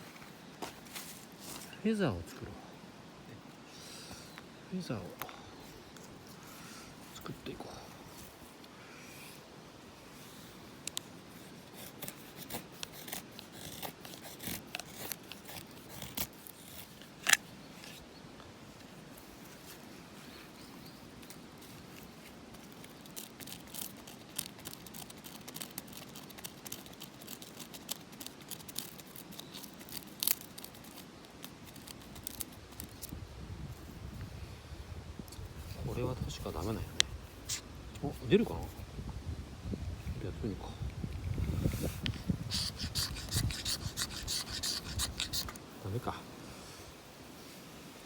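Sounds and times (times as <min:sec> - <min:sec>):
knife scraping wood: 0:11.3 - 0:18.0, 0:41.2 - 0:45.7.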